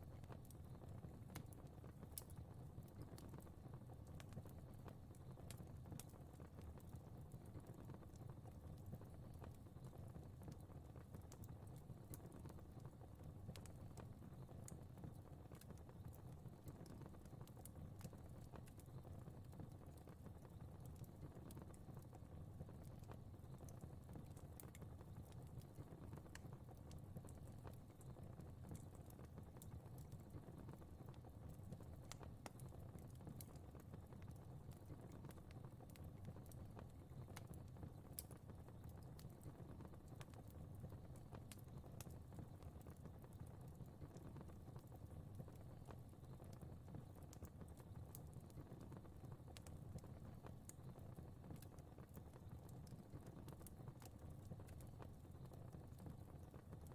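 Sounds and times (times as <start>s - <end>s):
fire crackling: 0.0s - 56.9s
low rumble of flames: 0.0s - 56.9s.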